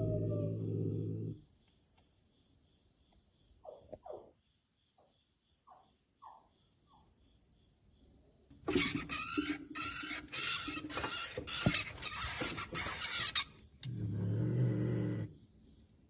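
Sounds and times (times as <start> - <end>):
cat growling: 0.0 - 1.4, 13.8 - 15.4
cat harsh scratchy bursts: 8.7 - 13.4.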